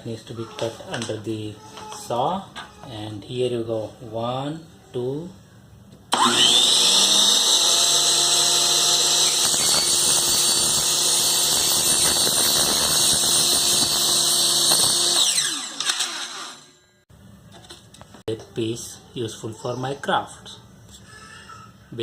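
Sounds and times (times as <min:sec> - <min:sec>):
miter saw motor whining: 0:06.1 - 0:16.7
saw cutting plastic wrap: 0:06.2 - 0:16.6.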